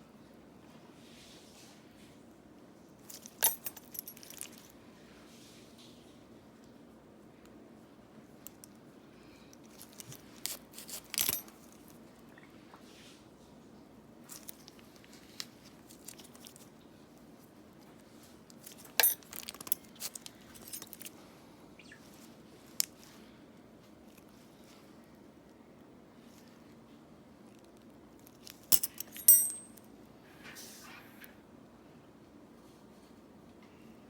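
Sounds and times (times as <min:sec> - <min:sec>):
metal instruments clicking and scraping: 0:18.7 - 0:21.1, 0:28.7 - 0:29.8.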